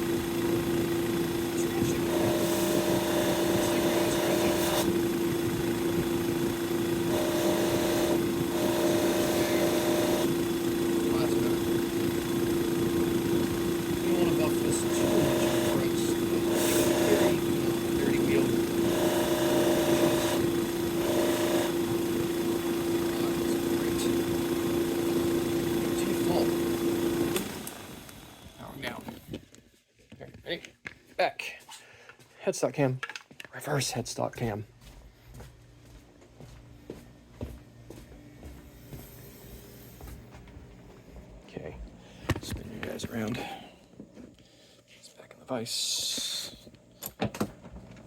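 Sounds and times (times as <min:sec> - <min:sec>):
electric buffing wheel humming: 0:00.0 - 0:29.3, 0:38.4 - 0:42.1
hiss of polishing: 0:15.1 - 0:17.4.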